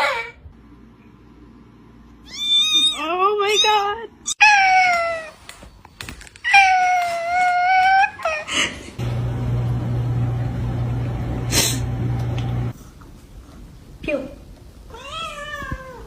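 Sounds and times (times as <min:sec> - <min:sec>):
cat meowing: 0:02.2 - 0:05.3, 0:14.9 - 0:16.0
cat crying: 0:02.2 - 0:05.4
low hum: 0:09.0 - 0:12.8.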